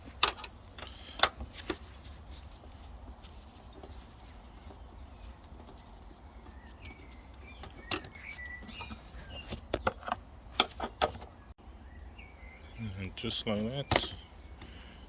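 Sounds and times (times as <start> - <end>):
sharp clicks and knocks: 0.0 - 1.9, 6.5 - 11.4.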